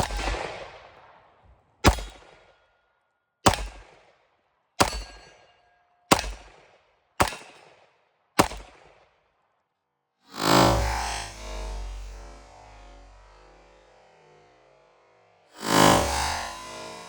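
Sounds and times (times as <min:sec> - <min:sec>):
rifle shots with echo: 0:00.0 - 0:02.5, 0:03.4 - 0:05.4, 0:06.1 - 0:09.2.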